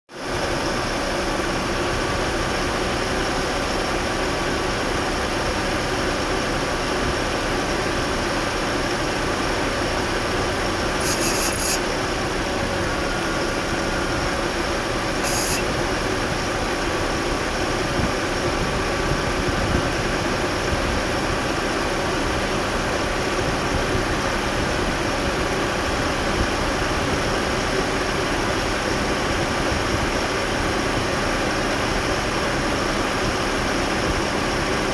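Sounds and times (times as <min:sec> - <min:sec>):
car engine idling: 0:00.2 - 0:34.9
brief high-pitched sounds: 0:11.0 - 0:11.9.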